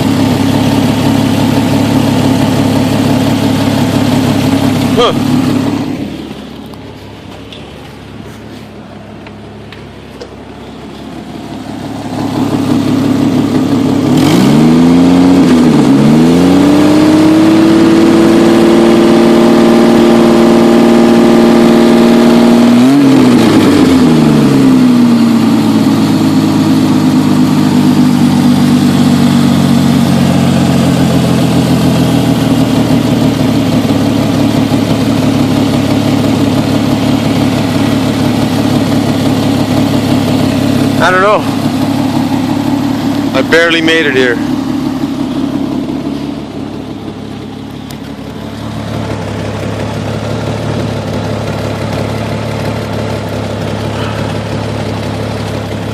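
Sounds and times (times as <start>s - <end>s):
misfiring engine revving: 0.0s - 55.9s.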